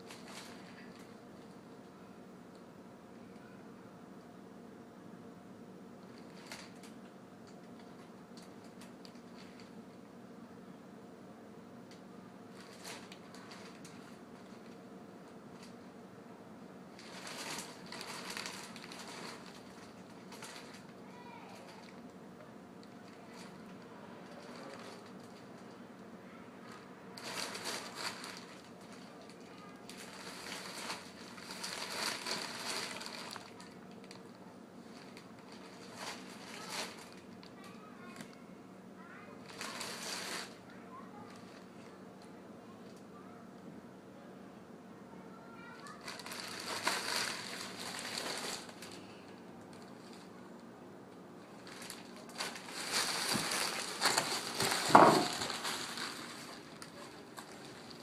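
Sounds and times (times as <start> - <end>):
plastic bag crinkling: 0.0 - 1.7, 6.0 - 9.9, 12.5 - 15.9, 16.9 - 22.2, 22.8 - 25.8, 26.6 - 38.4, 39.4 - 42.0, 45.6 - 58.0.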